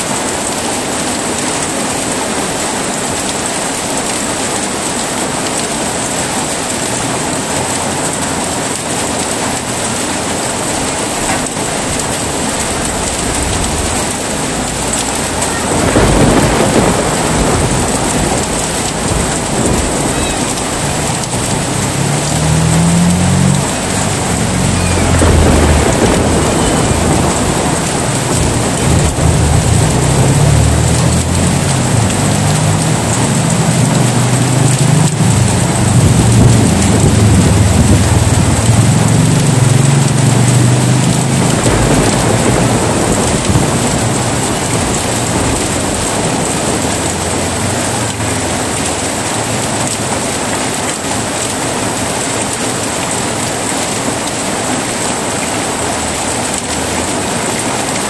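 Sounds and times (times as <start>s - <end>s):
heavy rain falling: 0.0s - 58.0s
low roll of thunder: 11.2s - 48.2s.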